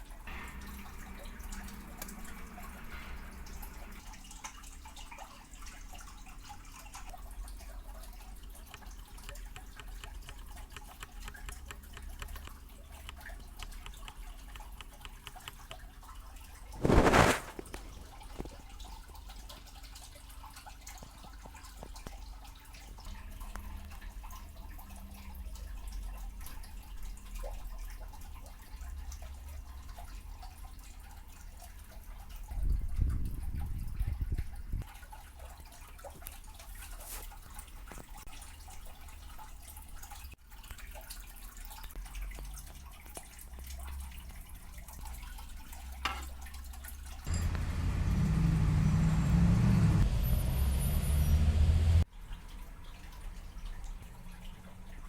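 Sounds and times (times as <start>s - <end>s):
low steady hum: 0.0s - 21.7s, 47.3s - 52.1s
light clicks and taps: 8.5s - 15.8s.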